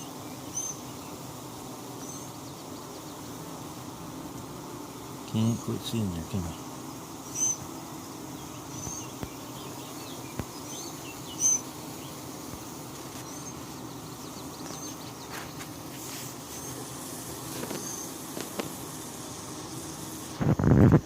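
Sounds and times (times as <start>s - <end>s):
honeybees humming: 0.0s - 21.0s
bird chirping: 0.2s - 1.2s, 1.9s - 3.3s, 7.2s - 7.7s, 8.3s - 12.2s, 13.2s - 15.6s.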